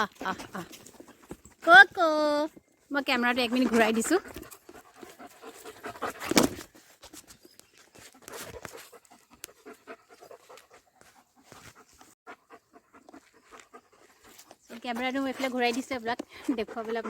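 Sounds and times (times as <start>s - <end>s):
dog panting: 3.2s - 7.2s, 8.0s - 17.0s.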